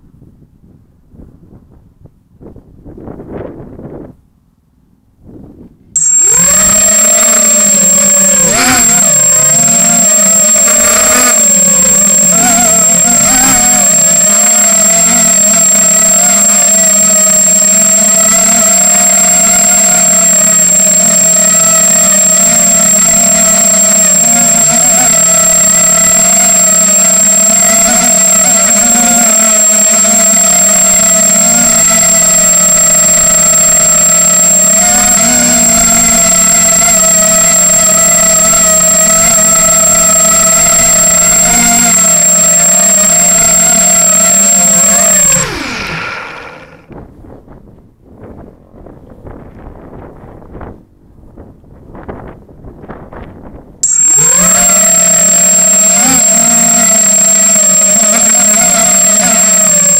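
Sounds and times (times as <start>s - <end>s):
thin high-pitched tone: 6.0s - 46.8s, 53.8s - 59.9s
drone motors whining: 6.0s - 47.0s, 53.8s - 59.9s.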